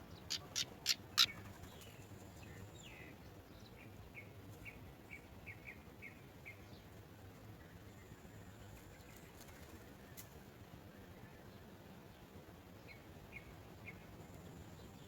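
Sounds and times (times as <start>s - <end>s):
birds clicking: 0.2s - 2.0s.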